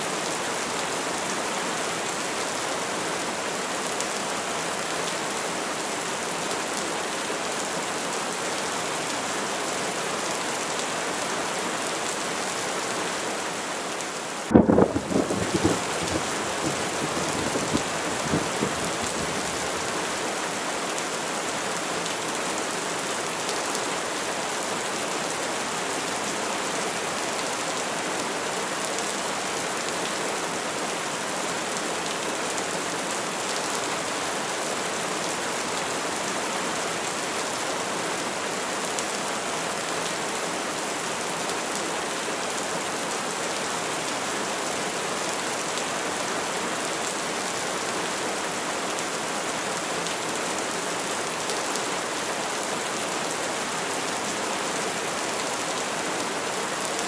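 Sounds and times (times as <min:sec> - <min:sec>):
heavy rain pattering: 0:14.0 - 0:23.8.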